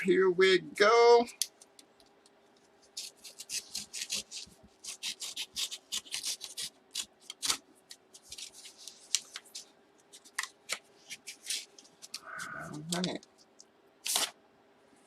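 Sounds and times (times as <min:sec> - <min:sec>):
paper envelope rustling: 0:02.5 - 0:13.0, 0:14.0 - 0:14.4.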